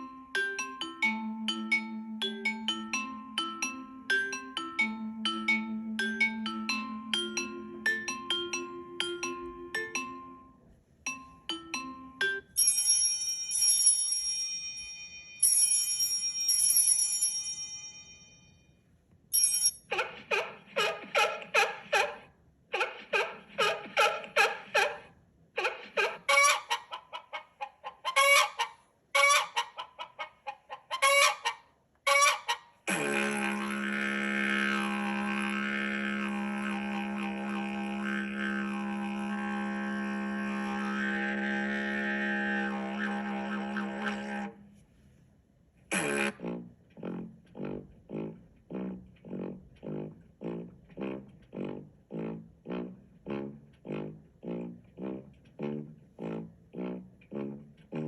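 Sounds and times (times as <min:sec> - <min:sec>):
ringing chime notes: 0:00.0 - 0:19.9
phone ringtone short tones: 0:19.4 - 0:19.8
buzzing drone tone: 0:32.9 - 0:44.5.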